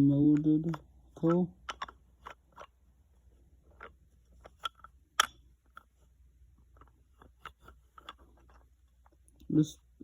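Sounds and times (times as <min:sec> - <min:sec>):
wooden toy clicks and taps: 0:00.2 - 0:02.8.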